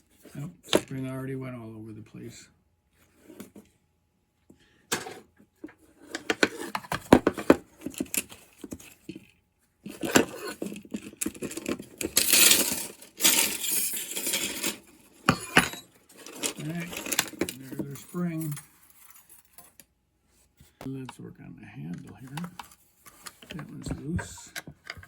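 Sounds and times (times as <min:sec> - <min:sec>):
metal parts and tools clinking: 0:09.9 - 0:19.8.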